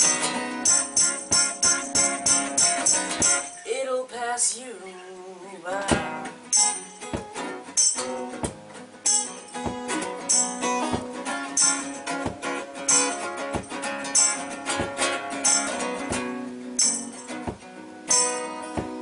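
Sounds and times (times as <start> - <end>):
drum beat of thumps and hits: 0.0 - 3.6, 5.9 - 19.0
acoustic guitar strumming: 0.0 - 4.1, 5.8 - 19.0.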